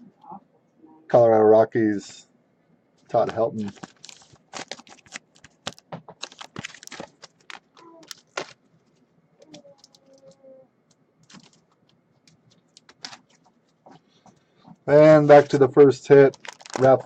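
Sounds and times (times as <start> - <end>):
faint whine: 0.0 - 17.0
cards and plastic sleeves clicking: 3.2 - 8.6, 11.2 - 13.4.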